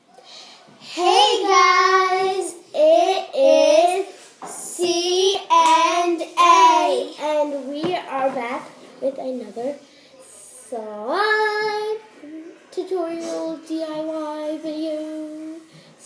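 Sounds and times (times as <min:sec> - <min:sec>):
child singing: 0:00.8 - 0:04.1, 0:04.7 - 0:08.4, 0:12.7 - 0:15.7.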